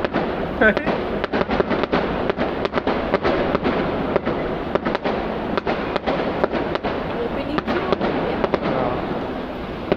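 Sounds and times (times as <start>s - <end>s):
fireworks bangs and crackles: 0.0s - 9.9s.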